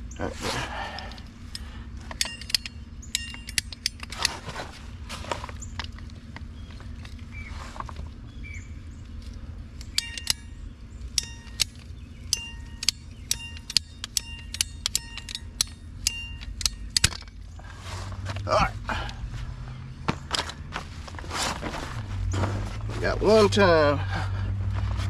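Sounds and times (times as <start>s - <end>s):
hand tool clicking on pipe: 1.0s - 4.3s, 9.8s - 10.5s, 11.2s - 17.3s
low rumble: 16.5s - 25.0s.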